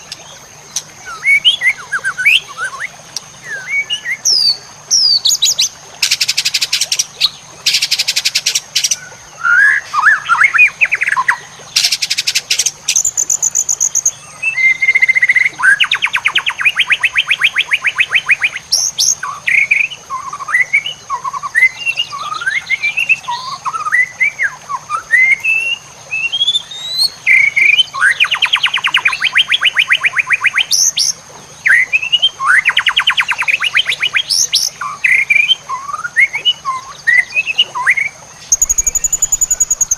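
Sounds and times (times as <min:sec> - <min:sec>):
bird whistled song: 0:01.0 - 0:39.9
bird rattling trills: 0:38.5 - 0:39.9.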